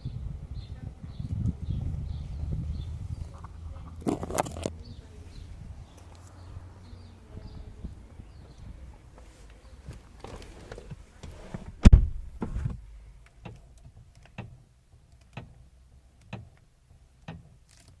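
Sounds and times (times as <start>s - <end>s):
clunks inside a car: 7.6s - 14.6s.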